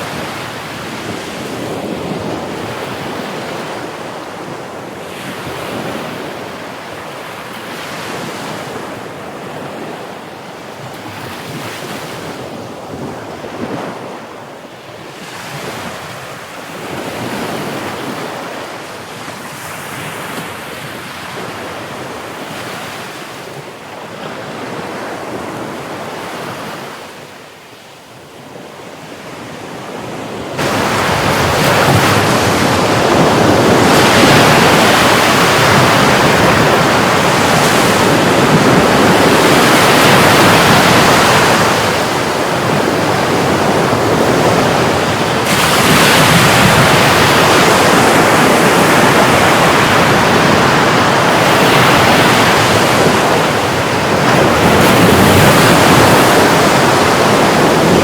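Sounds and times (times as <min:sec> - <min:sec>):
wind on microphone: 0:00.0 - 0:27.0, 0:28.4 - 0:58.0
sea surf washing in: 0:29.5 - 0:58.0.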